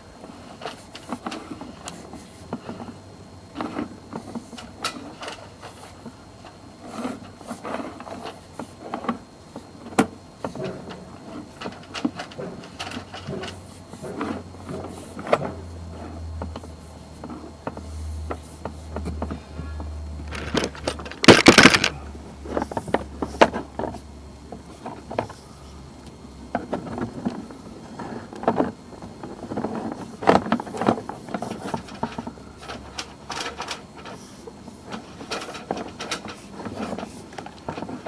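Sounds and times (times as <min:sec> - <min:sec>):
equipment rubbing and knocking: 0:20.3 - 0:22.0.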